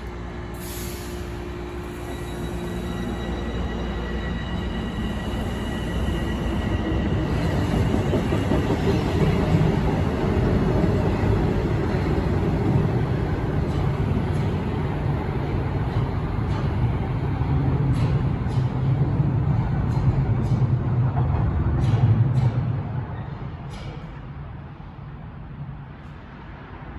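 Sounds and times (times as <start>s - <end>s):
subway train rumbling on rails: 0.0s - 26.9s.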